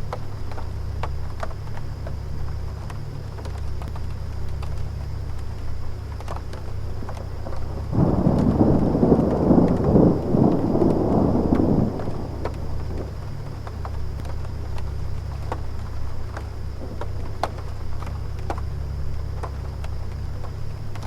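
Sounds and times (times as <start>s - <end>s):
air conditioner humming: 0.0s - 21.0s
faint high whine: 3.8s - 21.0s
distant thunder rolling: 7.4s - 14.2s.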